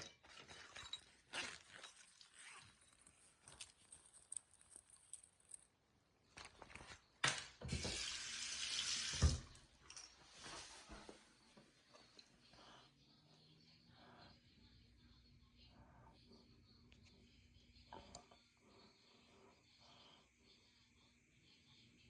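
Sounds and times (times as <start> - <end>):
sink tap running: 7.6 - 9.6.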